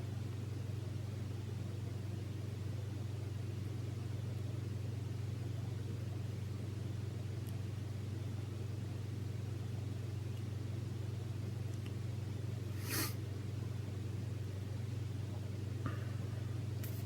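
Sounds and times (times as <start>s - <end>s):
steady low hum: 0.0s - 17.0s
short hissing rasp: 12.7s - 13.2s.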